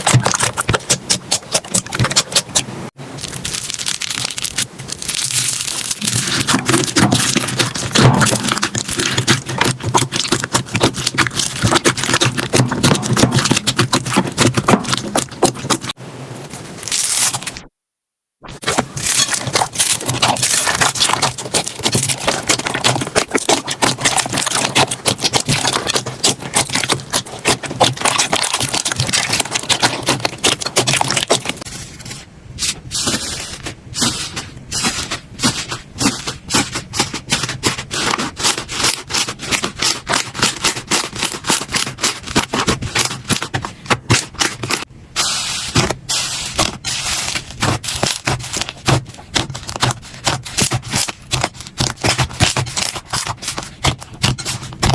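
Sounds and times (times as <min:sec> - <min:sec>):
slime crackling and clicking: 0:00.0 - 0:16.0, 0:18.6 - 0:31.7
slime squeezed by hands: 0:00.0 - 0:17.7, 0:18.4 - 0:54.9.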